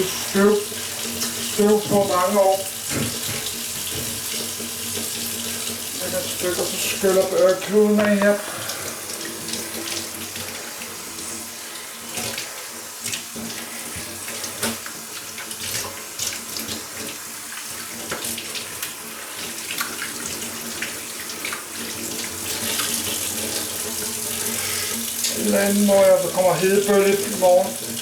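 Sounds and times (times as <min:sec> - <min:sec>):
tap running into sink: 0:01.0 - 0:10.9, 0:17.9 - 0:25.6.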